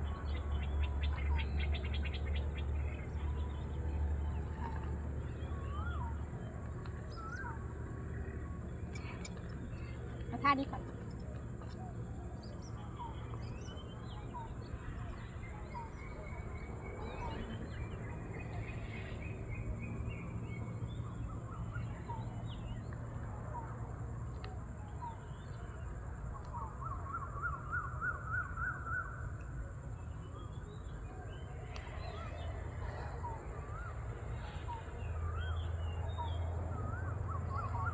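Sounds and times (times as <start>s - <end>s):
birds chirping: 5.4s - 17.9s.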